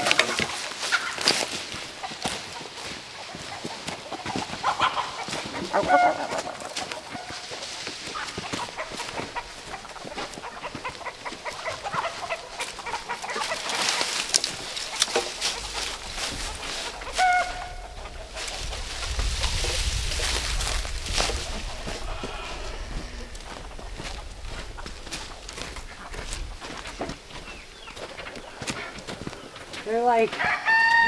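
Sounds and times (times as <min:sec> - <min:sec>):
chickens clucking: 0:00.0 - 0:31.0
rustling: 0:04.6 - 0:28.0.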